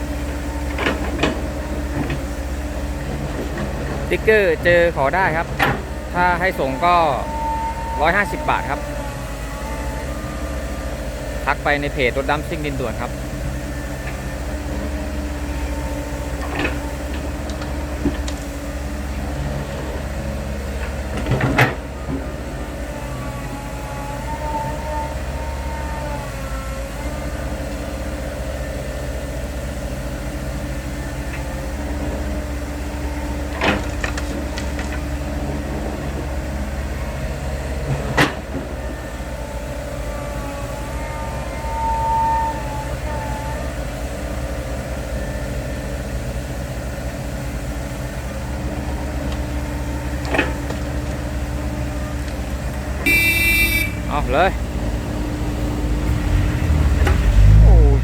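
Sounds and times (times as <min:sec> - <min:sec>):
diesel truck engines rumbling: 0:00.0 - 0:58.0.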